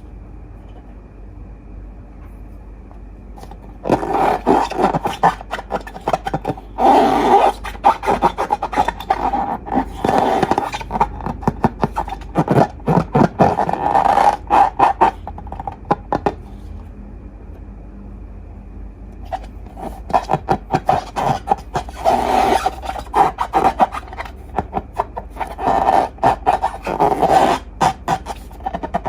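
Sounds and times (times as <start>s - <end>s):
slime squelching: 3.4s - 16.8s, 19.2s - 29.0s.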